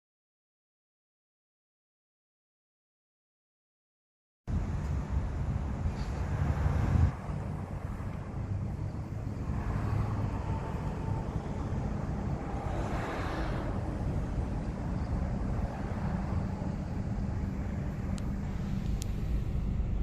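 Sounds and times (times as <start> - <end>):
car engine and road rumble: 4.5 - 20.0
rush of noise: 4.5 - 20.0.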